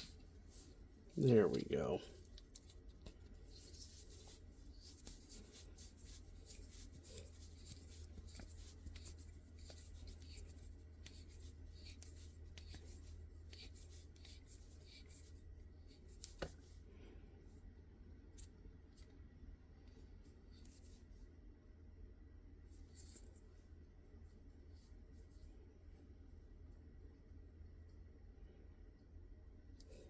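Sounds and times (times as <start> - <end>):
steady low hum: 0.0 - 30.0
hands rubbing and clicking metal: 1.5 - 15.3.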